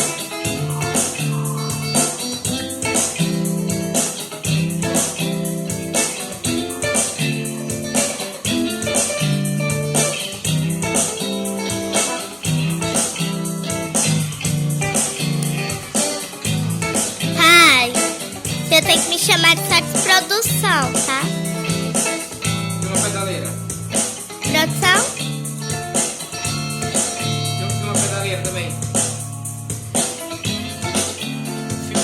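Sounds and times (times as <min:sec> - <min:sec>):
sharp rhythmic ticks: 0:00.0 - 0:22.9
guitar chords strummed: 0:00.0 - 0:32.0.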